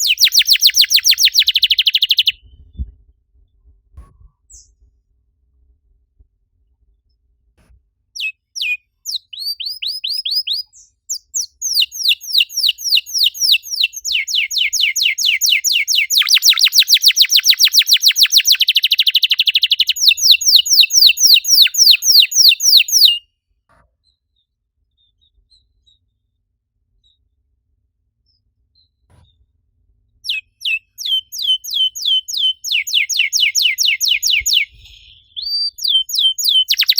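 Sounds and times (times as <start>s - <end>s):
canary singing: 0.0s - 2.4s, 8.2s - 23.2s, 30.3s - 36.9s.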